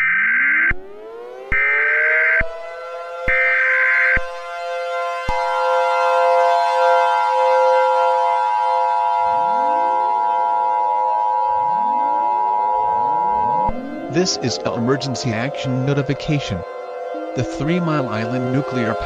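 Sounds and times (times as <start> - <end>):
civil defense sirens winding up: 0.0 - 19.0
steady siren tones: 0.0 - 19.0
two-tone attention signal: 9.2 - 19.0
data header burst: 11.4 - 16.4.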